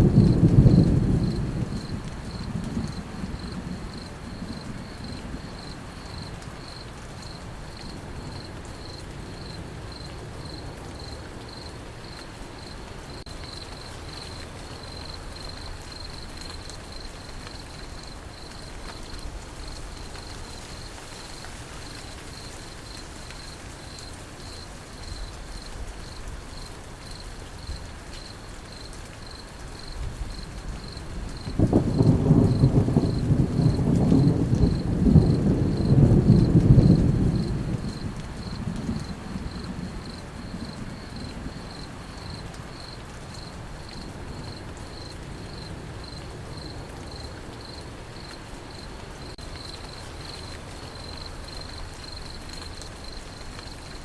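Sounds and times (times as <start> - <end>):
thunder rumble: 0.0 - 10.6, 29.8 - 48.3
crickets chirping: 0.0 - 54.0
rain hiss: 0.0 - 54.0.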